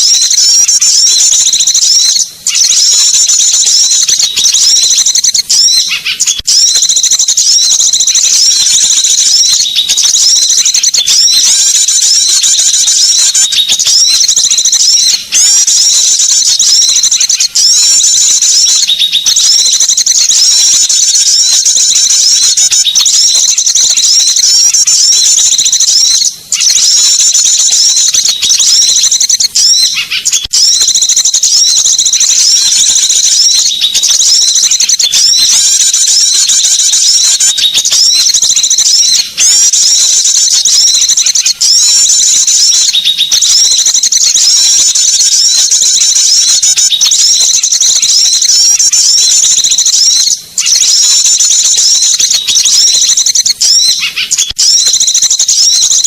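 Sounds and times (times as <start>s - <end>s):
bird lure call chirping: 0.0s - 56.0s.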